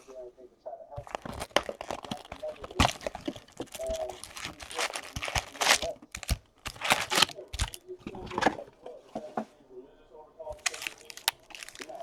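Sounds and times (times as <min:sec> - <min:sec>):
plastic wrapping crinkling and tearing: 0:01.0 - 0:08.7, 0:10.5 - 0:12.0.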